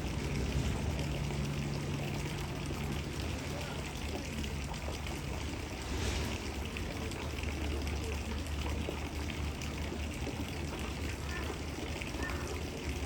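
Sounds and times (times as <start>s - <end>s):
low hum: 0.0s - 7.9s
running water: 0.0s - 13.0s.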